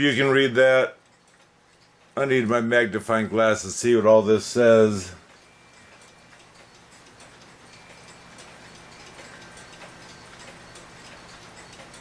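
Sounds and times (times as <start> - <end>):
clock ticking: 5.2 - 12.0.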